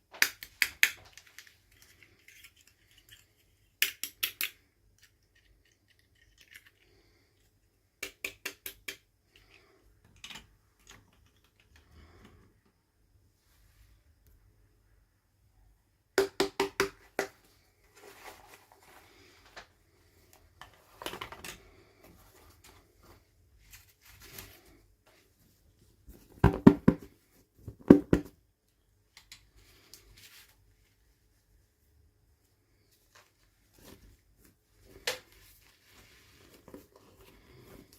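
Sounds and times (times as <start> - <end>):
soft rustling of packaging: 17.4 - 26.4, 28.6 - 37.9.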